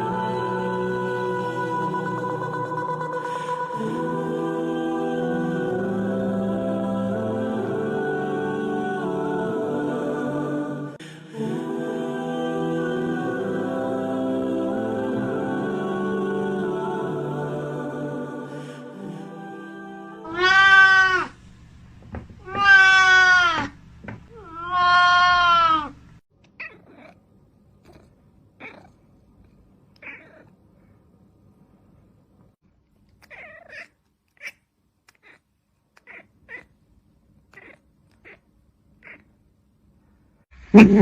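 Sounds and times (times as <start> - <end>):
cat faint meows and chirps: 20.3 - 21.3, 22.4 - 27.2, 27.8 - 29.0, 30.0 - 30.5, 33.2 - 35.4, 36.0 - 36.8, 37.5 - 39.3
cat meowing loudly: 20.3 - 21.4, 22.4 - 26.0.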